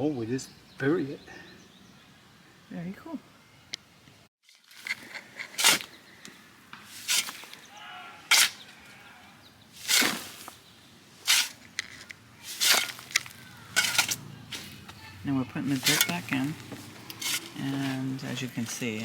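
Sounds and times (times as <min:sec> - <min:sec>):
shovel scooping and dropping dirt: 0:04.5 - 0:06.0, 0:06.8 - 0:08.8, 0:09.7 - 0:15.0, 0:15.6 - 0:19.0.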